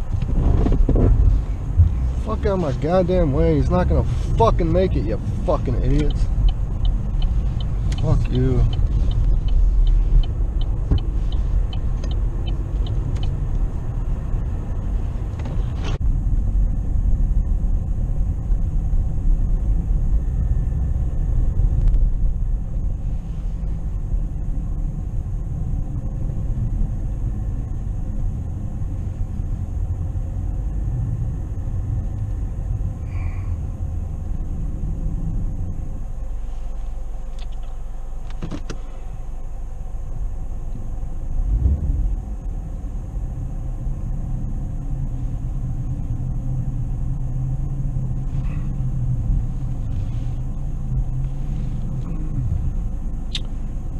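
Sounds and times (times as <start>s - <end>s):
car engine and tyres rumbling: 0.0s - 53.9s
light ticks: 5.6s - 13.7s.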